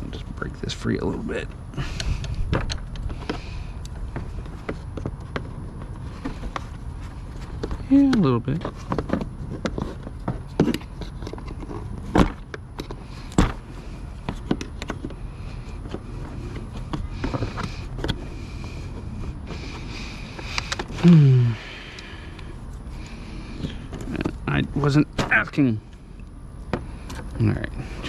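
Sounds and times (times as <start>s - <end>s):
parts clicking and scraping: 1.8s - 21.0s.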